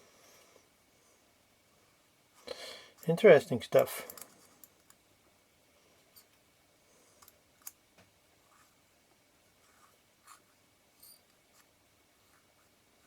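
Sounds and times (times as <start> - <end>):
faint sharp clicks of small parts: 3.9 - 5.0, 7.1 - 8.1.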